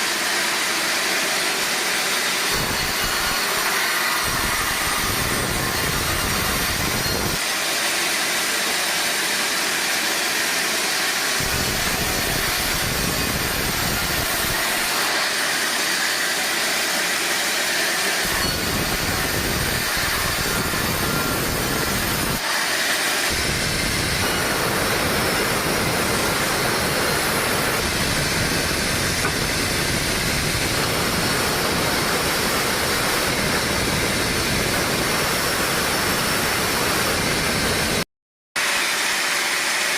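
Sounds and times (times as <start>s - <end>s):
sawmill machinery rushing: 0.0s - 38.0s, 38.6s - 39.9s.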